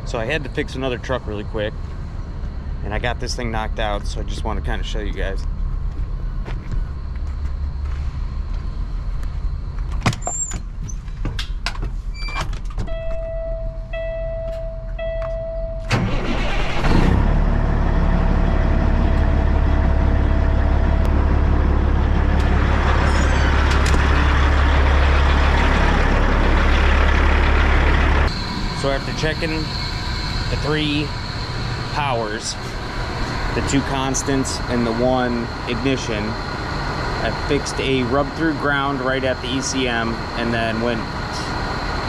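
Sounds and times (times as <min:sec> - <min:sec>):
diesel engine idling: 0:00.0 - 0:09.8, 0:15.8 - 0:42.0
truck dashboard warning beeps: 0:12.2 - 0:16.7
diesel engine cranking and starting: 0:15.8 - 0:42.0.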